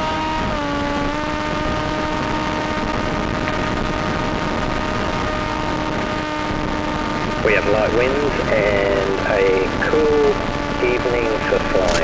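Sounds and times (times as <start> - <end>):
electric motor and propeller hum: 0.0 - 12.0
constant hiss: 5.8 - 12.0.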